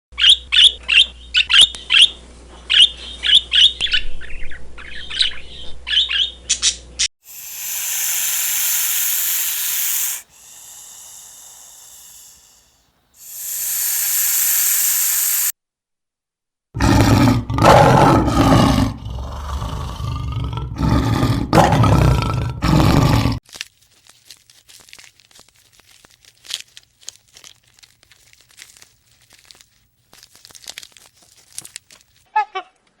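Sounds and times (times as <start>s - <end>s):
rushing hiss: 7.2s - 15.5s
loud low animal roar: 16.8s - 23.4s.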